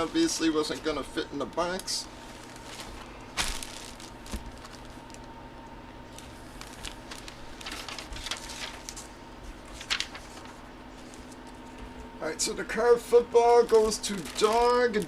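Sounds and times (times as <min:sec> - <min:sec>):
faint steady hum: 0:00.0 - 0:15.0
clicks and rustles of handling: 0:06.1 - 0:12.1.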